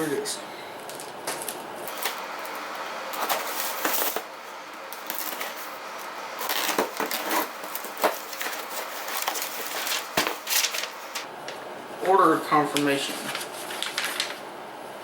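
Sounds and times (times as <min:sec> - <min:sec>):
packaging rustling: 0:00.8 - 0:04.3, 0:04.9 - 0:05.8, 0:06.4 - 0:11.3, 0:12.7 - 0:14.5.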